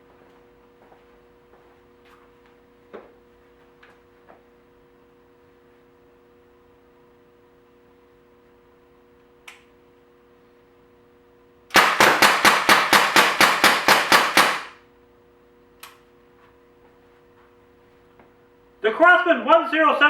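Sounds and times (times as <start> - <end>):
air rifle shots: 11.7 - 14.8.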